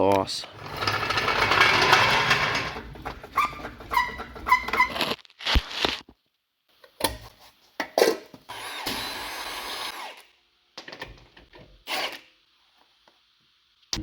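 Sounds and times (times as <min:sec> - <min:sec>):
tools and metal parts clanking: 0:00.5 - 0:05.0
handheld power tool running: 0:00.6 - 0:04.9.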